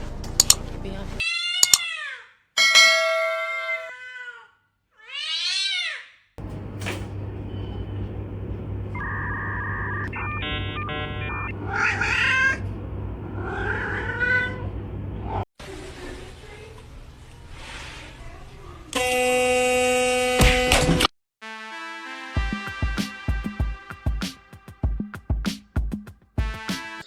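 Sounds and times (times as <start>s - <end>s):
cat meowing: 3.6s - 6.1s, 9.0s - 15.4s
steady low hum: 6.4s - 15.4s
short steady tones: 7.4s - 11.7s.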